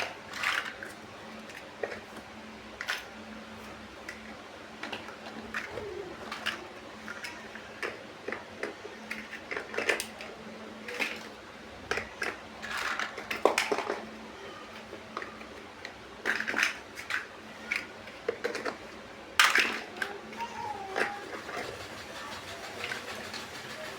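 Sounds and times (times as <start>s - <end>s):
plastic bricks clicking together: 10.9s - 14.0s, 16.2s - 21.7s.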